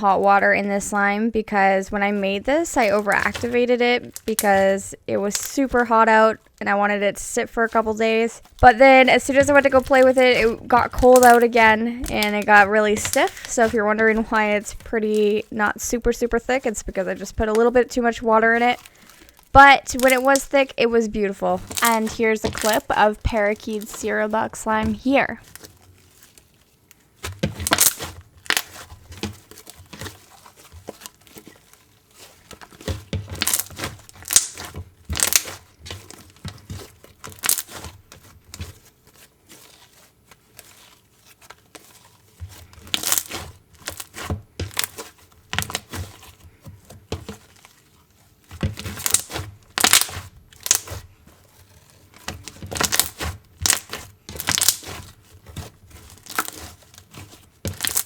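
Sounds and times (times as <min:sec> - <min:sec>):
slime popping and clicking: 0:33.4 - 0:35.6.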